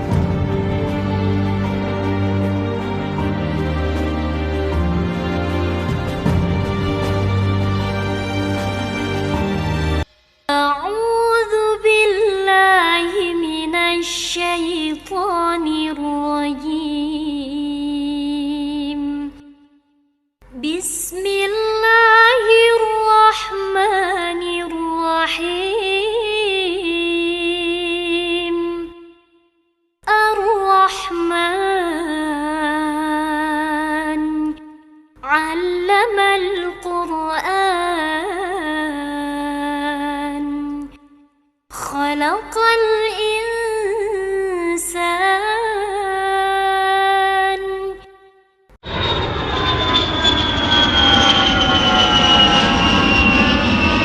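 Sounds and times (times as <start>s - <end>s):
woman singing unaccompanied: 10.5s - 19.4s, 20.5s - 28.9s, 30.1s - 34.6s, 35.2s - 41.0s, 41.7s - 48.1s.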